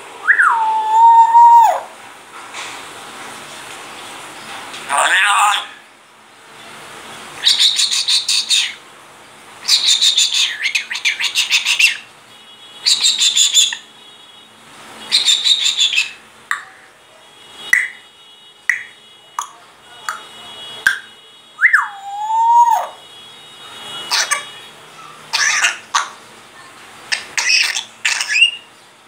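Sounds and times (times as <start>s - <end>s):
long falling whistle: 0.2s - 1.8s, 21.6s - 22.8s
parrot whistled chirps: 0.2s - 1.9s, 7.4s - 8.8s, 9.6s - 12.0s, 12.8s - 13.8s, 15.1s - 16.2s, 21.6s - 23.0s
parrot screeching: 0.3s - 2.0s, 4.9s - 5.7s, 7.4s - 8.8s, 9.6s - 12.1s, 12.8s - 13.8s, 15.1s - 16.2s, 21.6s - 23.0s, 24.1s - 24.4s, 25.0s - 26.2s, 27.1s - 28.7s.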